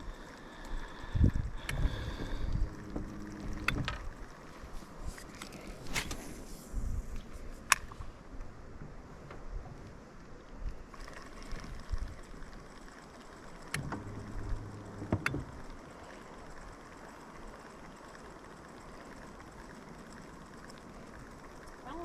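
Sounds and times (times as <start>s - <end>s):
brief low hum: 1.7s - 6.5s, 13.8s - 16.0s.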